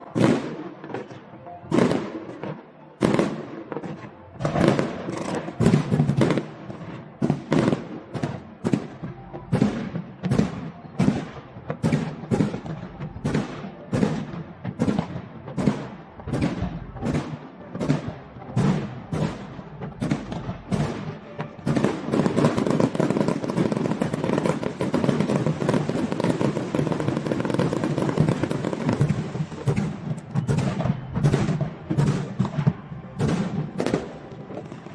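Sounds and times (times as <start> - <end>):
continuous firework crackling: 0.0 - 34.9.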